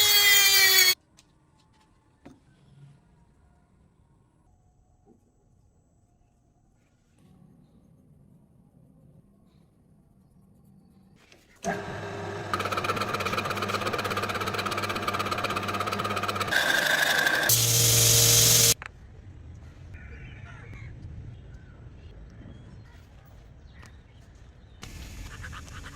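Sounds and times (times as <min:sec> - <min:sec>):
power tool buzzing: 0:11.7 - 0:18.8.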